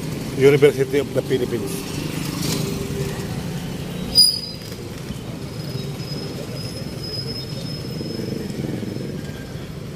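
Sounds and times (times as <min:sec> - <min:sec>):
low traffic rumble: 0:00.0 - 0:09.9.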